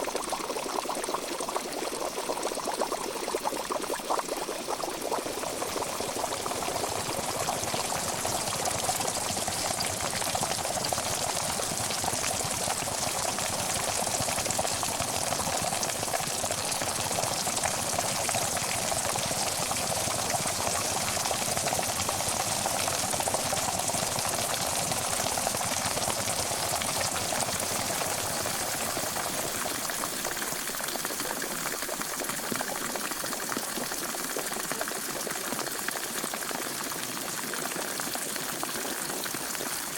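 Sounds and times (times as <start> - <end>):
water boiling in a pot: 0.0 - 39.9.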